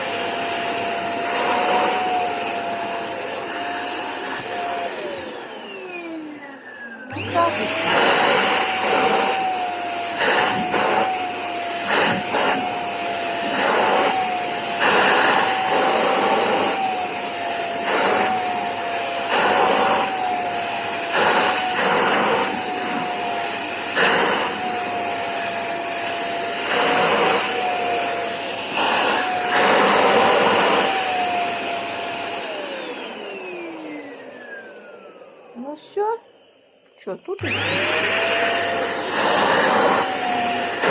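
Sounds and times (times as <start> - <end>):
vacuum cleaner running: 0.0 - 40.9.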